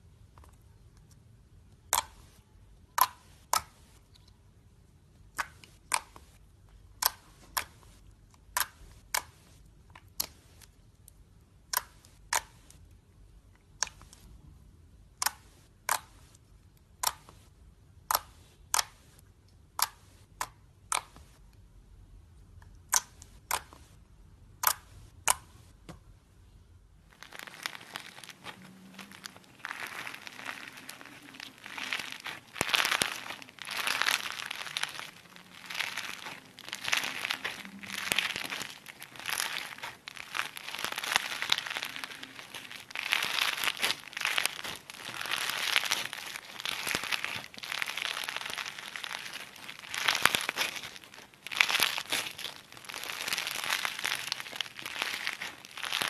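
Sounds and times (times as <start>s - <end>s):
slime squeezed by hand crackling: 27.1s - 56.0s.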